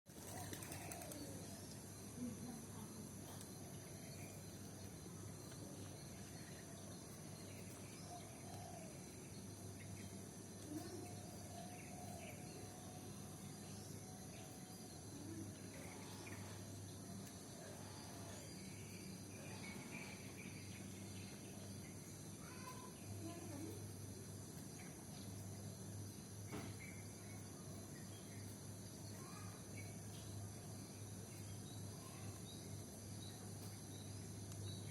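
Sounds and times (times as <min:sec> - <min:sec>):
insect drone: 0:00.1 - 0:34.9
faint bird chirps: 0:00.2 - 0:34.9.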